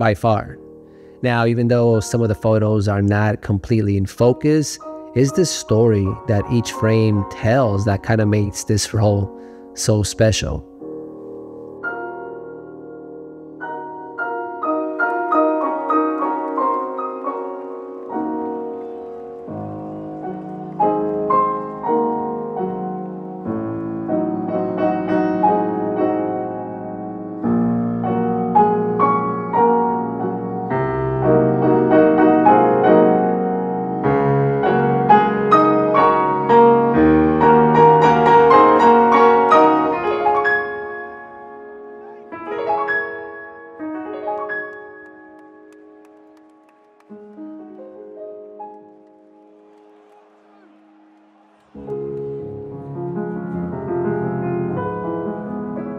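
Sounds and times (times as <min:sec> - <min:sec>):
piano music: 0:00.0 - 0:55.9.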